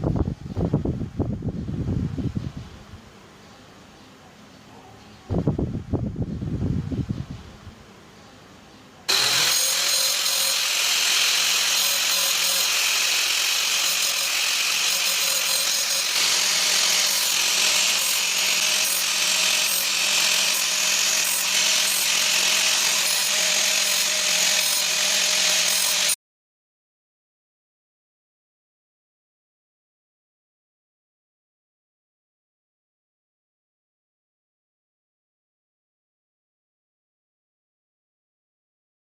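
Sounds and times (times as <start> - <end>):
circular saw cutting: 9.1 - 26.2.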